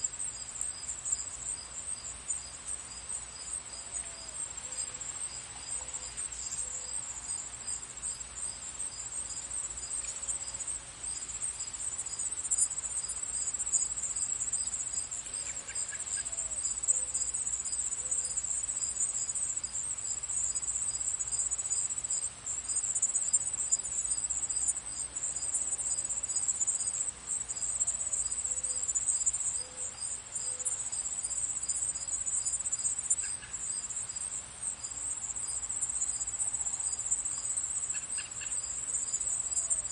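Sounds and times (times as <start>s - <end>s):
crickets chirping: 0.0s - 39.9s
faint bird calls: 37.9s - 38.7s.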